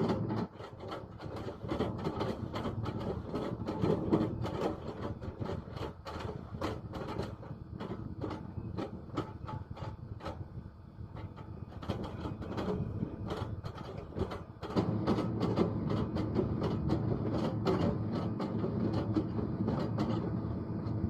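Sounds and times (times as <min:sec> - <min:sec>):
excavator running under load: 0:00.0 - 0:21.0
wood knocking and clattering: 0:11.2 - 0:21.0.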